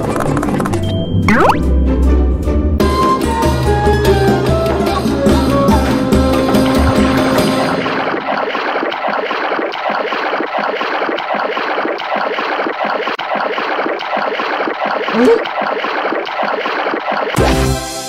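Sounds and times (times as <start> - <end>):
cartoon water splashing: 1.3 - 1.7, 6.5 - 17.9.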